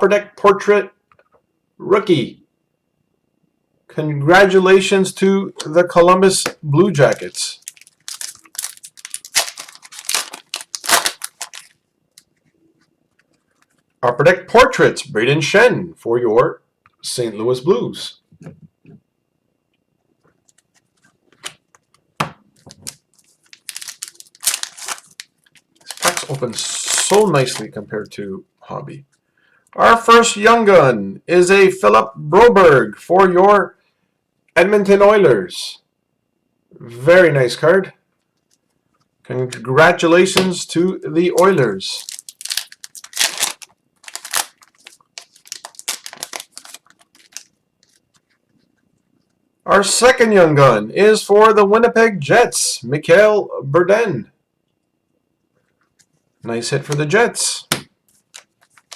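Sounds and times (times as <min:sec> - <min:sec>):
card pack wrapper tearing: 0:07.0 - 0:12.3, 0:22.6 - 0:27.8, 0:41.4 - 0:48.2, 0:58.2 - 0:58.9.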